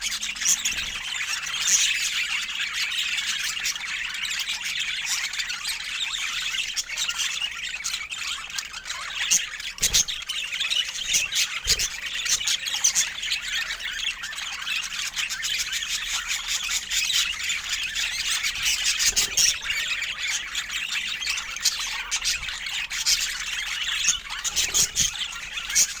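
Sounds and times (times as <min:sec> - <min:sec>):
budgerigars chattering: 0:00.0 - 0:26.0.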